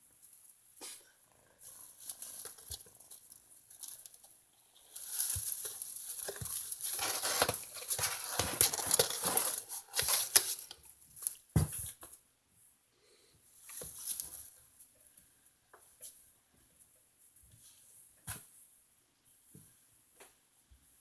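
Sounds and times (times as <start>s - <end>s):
kittens scrambling and scratching: 1.6s - 10.9s.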